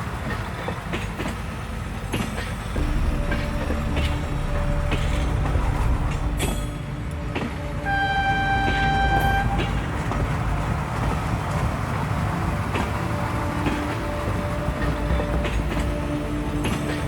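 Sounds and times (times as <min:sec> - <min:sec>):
train rumbling: 0:00.0 - 0:17.0
train horn blast: 0:02.8 - 0:17.0.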